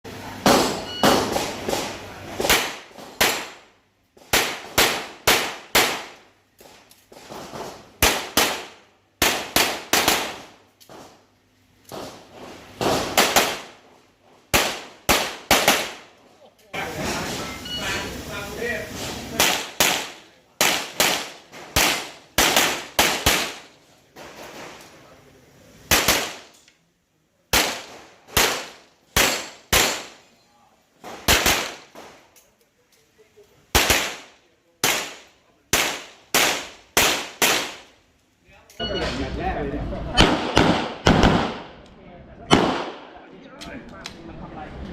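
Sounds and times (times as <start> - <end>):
handgun shots: 27.6 - 30.2, 33.7 - 37.8
handgun shots echoing: 27.6 - 30.2.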